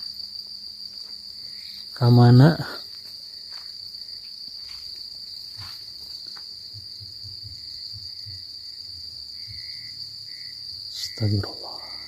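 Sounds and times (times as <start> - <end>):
crickets chirring: 0.0 - 12.0
footsteps on a path: 2.8 - 8.5.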